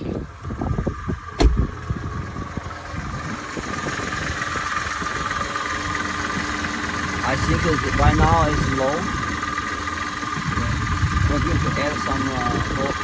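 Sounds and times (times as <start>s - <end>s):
car engine idling: 0.0s - 13.0s
sharp thump: 1.4s - 1.9s.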